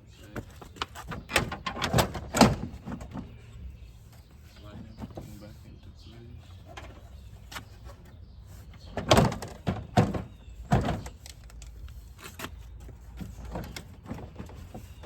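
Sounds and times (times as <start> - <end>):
plastic bumper knocking against car: 8.8 - 11.2.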